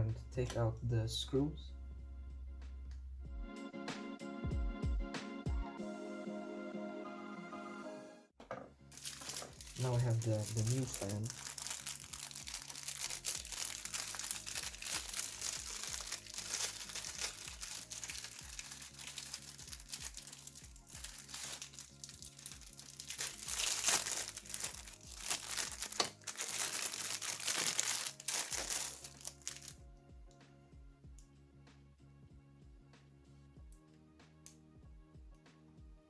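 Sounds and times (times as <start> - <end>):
soft background music: 0.0 - 36.0
plastic packaging crinkling: 8.9 - 29.8.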